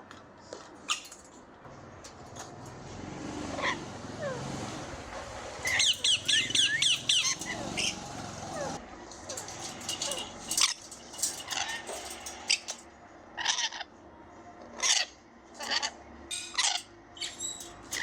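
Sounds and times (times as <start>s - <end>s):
bird chirps and squawks: 5.6s - 8.8s, 14.8s - 18.0s.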